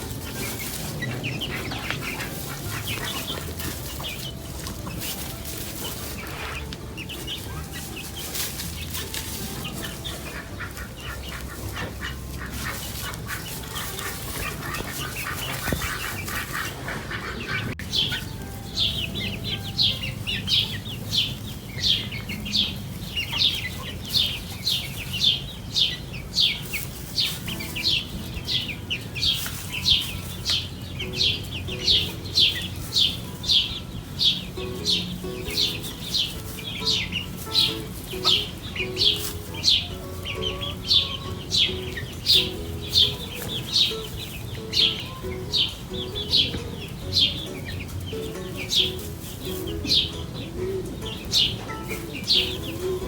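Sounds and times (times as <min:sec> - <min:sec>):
birds calling: 0:00.0 - 0:53.0.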